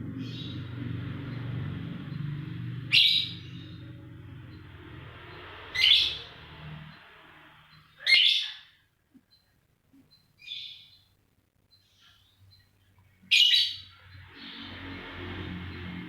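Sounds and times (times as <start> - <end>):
lovebird shrill calls: 7.8 - 8.8, 13.3 - 14.5.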